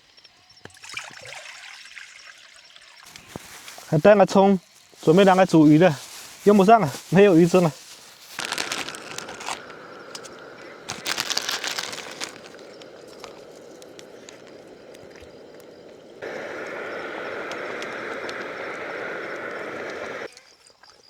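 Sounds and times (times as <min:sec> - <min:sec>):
plastic packaging crinkling: 0:03.1 - 0:15.9
steady hiss: 0:03.1 - 0:20.3.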